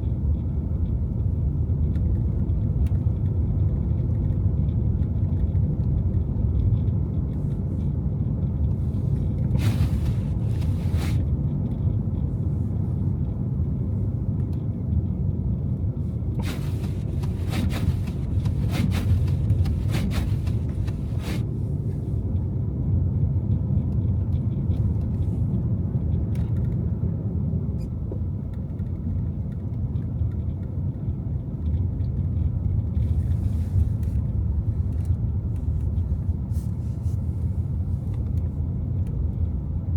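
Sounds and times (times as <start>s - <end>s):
car road and engine rumble: 0.0s - 39.9s
short hissing swishes: 9.6s - 11.2s, 16.4s - 21.4s.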